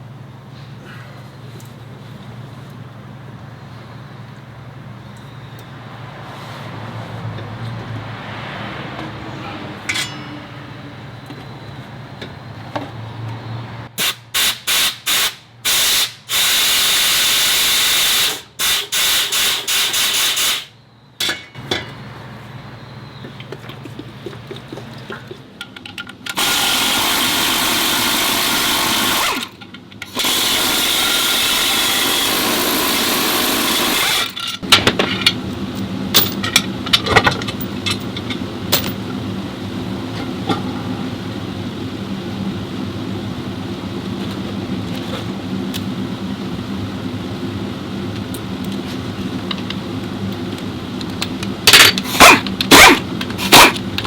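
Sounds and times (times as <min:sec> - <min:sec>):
knocks and clanks: 0:21.2 - 0:22.0, 0:36.1 - 0:39.1
power tool running: 0:26.4 - 0:34.4.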